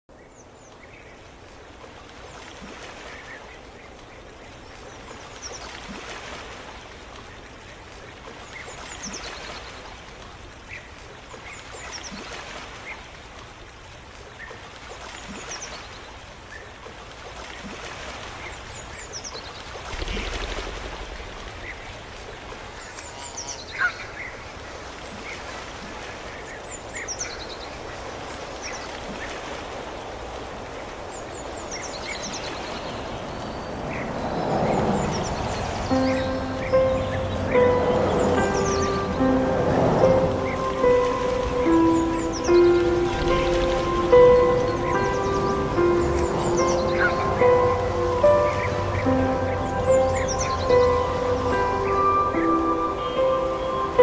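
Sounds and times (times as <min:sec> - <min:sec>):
soft rushing background: 0:31.0 - 0:54.0
small birds chirping: 0:31.2 - 0:54.0.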